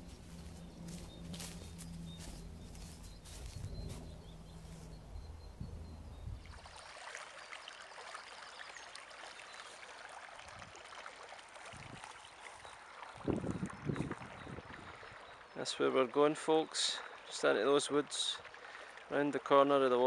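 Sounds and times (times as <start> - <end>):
low steady hum: 0.0 - 6.8
stream babbling: 0.0 - 20.0.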